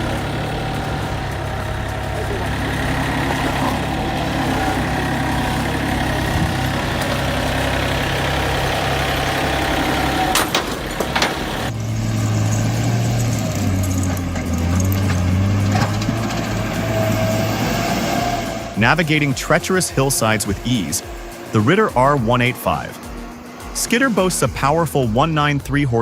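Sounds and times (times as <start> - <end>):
engine low steady hum: 0.0 - 25.7
heavy machinery engine running: 0.0 - 26.0.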